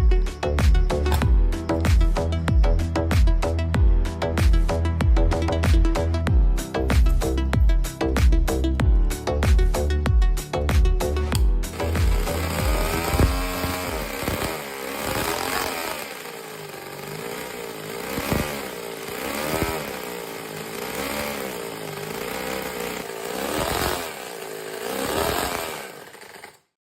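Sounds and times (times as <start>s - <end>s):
small engine revving: 0.0s - 1.9s, 11.4s - 26.8s.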